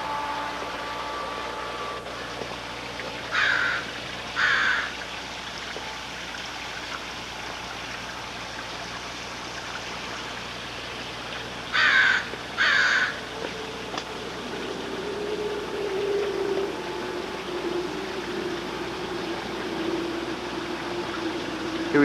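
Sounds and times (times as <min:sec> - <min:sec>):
water flowing in a stream: 0:00.0 - 0:22.0
crow cawing: 0:03.3 - 0:03.8, 0:04.4 - 0:04.9, 0:11.7 - 0:13.2.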